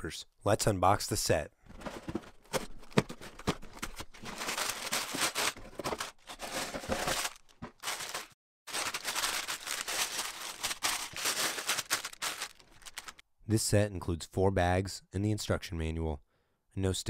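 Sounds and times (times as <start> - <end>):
plastic bags crinkling: 1.8 - 13.2
cardboard box tearing: 2.9 - 12.2.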